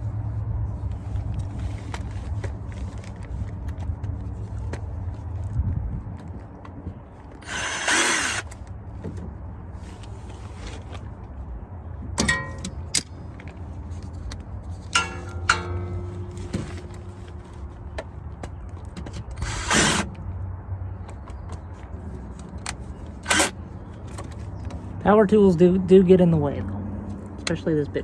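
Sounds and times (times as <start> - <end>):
power tool rasping bursts: 7.4 - 8.5, 19.4 - 20.1.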